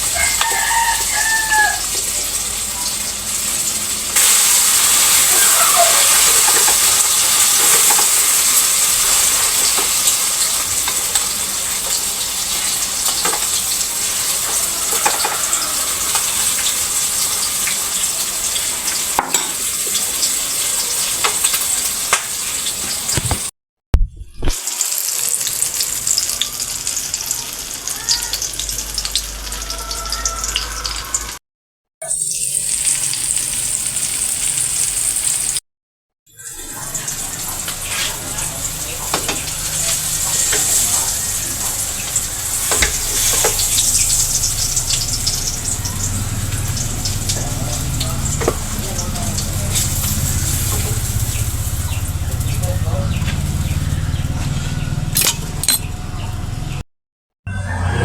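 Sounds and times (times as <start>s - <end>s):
eggplant frying in oil: 0.0s - 23.5s, 24.4s - 31.4s, 32.0s - 35.6s, 36.4s - 55.0s.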